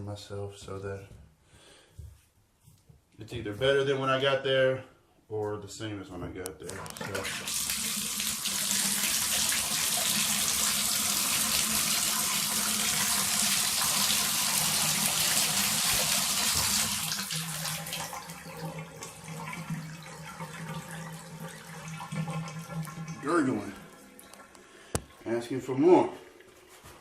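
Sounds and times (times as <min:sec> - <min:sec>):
drain gurgling: 0:06.6 - 0:26.6
faucet running water into tub: 0:06.6 - 0:26.6.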